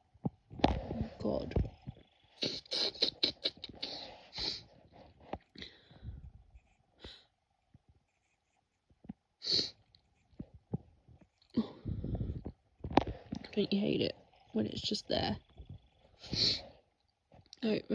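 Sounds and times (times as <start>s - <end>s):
short breaths and sniffs: 2.4s - 4.7s.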